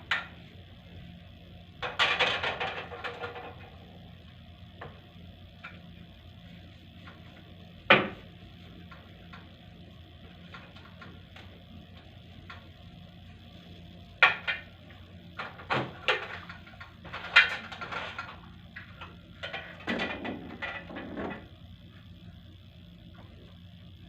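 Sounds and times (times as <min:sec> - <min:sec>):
hard objects knocking and clattering: 0:15.4 - 0:21.4.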